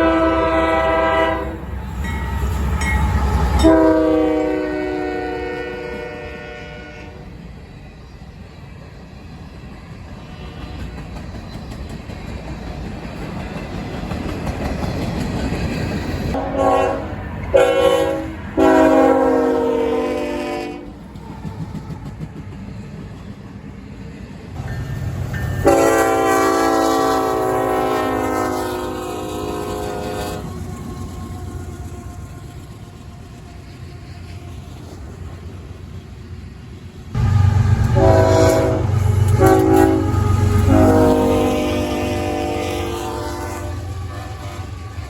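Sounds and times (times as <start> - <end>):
locomotive air horn blasts: 0.0 - 1.7, 3.2 - 7.2, 16.4 - 21.0, 25.6 - 30.8, 37.2 - 45.0
rumble of approaching train: 0.0 - 45.0.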